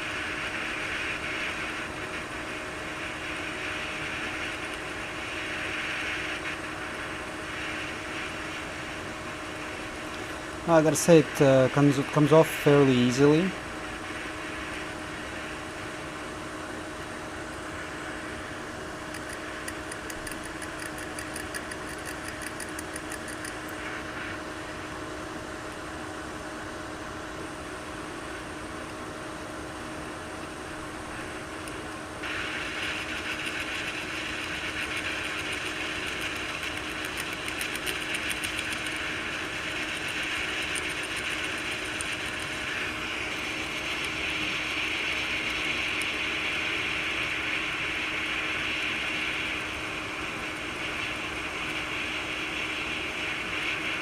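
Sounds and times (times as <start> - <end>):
rush of hot air: 0.0 - 54.0.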